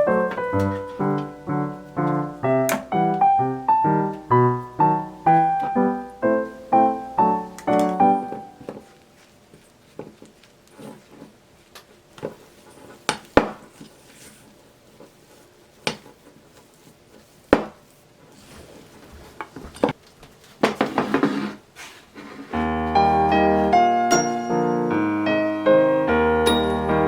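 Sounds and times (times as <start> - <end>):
soft piano music: 0.0 - 9.0, 22.6 - 27.0
rustling scrape: 8.5 - 23.9.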